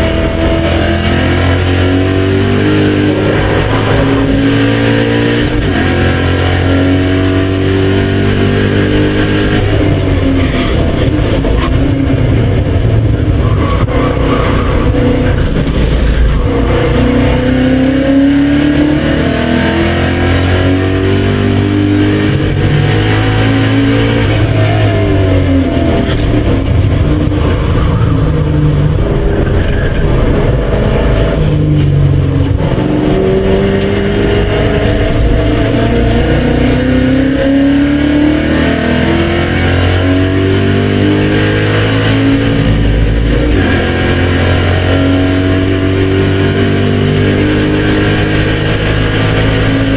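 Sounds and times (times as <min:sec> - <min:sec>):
car engine revving through gears: 0:00.0 - 0:49.9.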